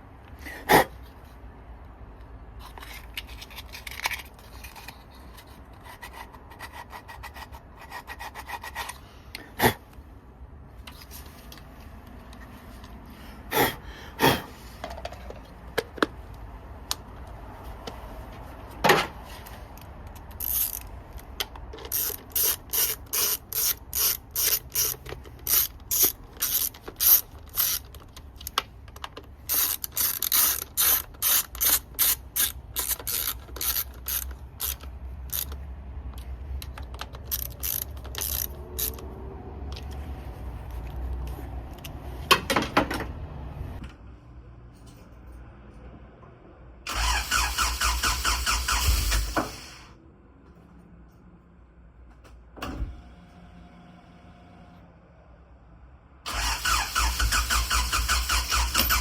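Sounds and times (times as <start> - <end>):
ratchet wrench clicking: 19.8 - 35.6, 36.2 - 39.1, 46.9 - 49.8, 56.3 - 59.0.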